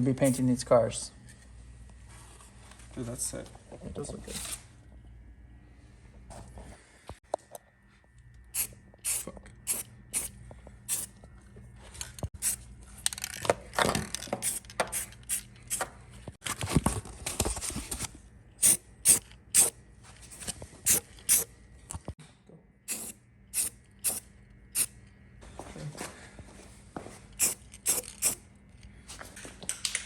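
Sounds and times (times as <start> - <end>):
aerosol spray can hissing: 8.6 - 10.3, 10.9 - 11.1, 22.9 - 24.2, 27.4 - 28.4.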